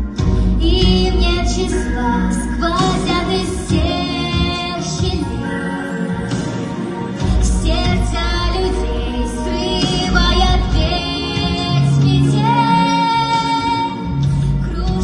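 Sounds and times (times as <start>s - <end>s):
instrumental backing with bass: 0.0s - 15.0s
high singing voice: 0.6s - 6.5s.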